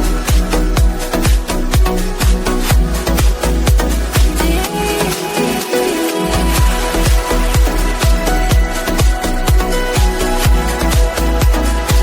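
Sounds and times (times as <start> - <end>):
kick drum: 0.0 - 4.6, 6.5 - 12.0
electronic dance music: 0.0 - 12.0.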